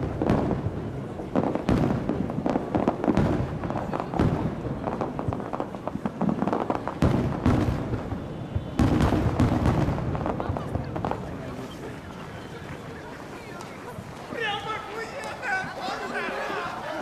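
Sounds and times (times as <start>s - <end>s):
sharp fireworks bangs: 0.0s - 12.0s
fireworks bursts and crackling: 0.0s - 17.0s.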